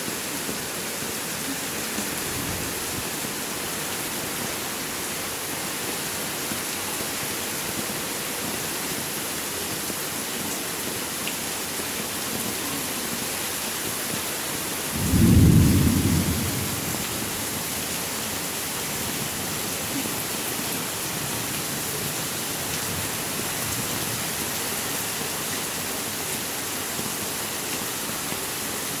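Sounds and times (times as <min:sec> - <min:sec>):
heavy rain falling: 0:00.0 - 0:29.0
thunder rumbling: 0:14.9 - 0:17.8.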